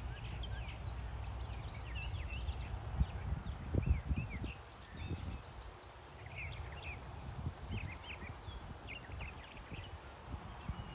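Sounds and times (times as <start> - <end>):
birds chirping: 0.0 - 2.7.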